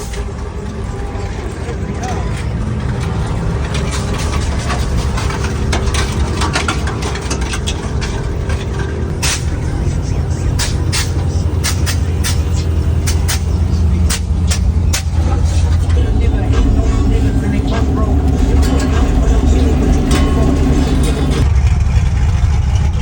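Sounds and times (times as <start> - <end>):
truck engine running: 0.0 - 23.0
air suspension hisses: 9.2 - 9.6, 10.6 - 15.8.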